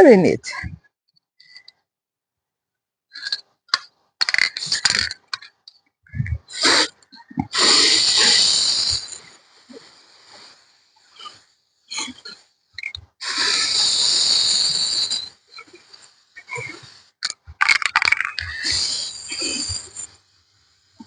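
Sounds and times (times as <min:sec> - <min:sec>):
spray paint can hissing: 0:07.5 - 0:09.3, 0:13.2 - 0:15.4, 0:17.6 - 0:20.0.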